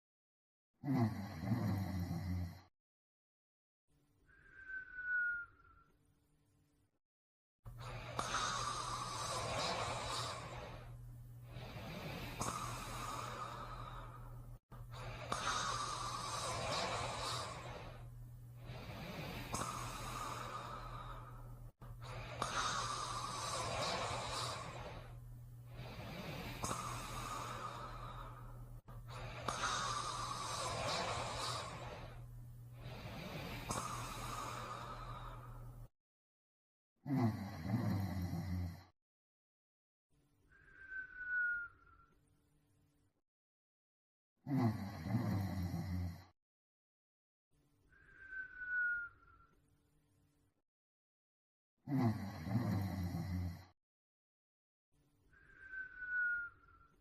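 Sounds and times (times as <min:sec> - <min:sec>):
person snoring: 0:00.8 - 0:02.7, 0:07.7 - 0:35.8, 0:37.0 - 0:38.9, 0:44.4 - 0:46.3, 0:51.8 - 0:53.7
heavy breathing of a sleeper: 0:07.7 - 0:35.9, 0:55.3 - 0:56.6
steady low hum: 0:07.7 - 0:35.9.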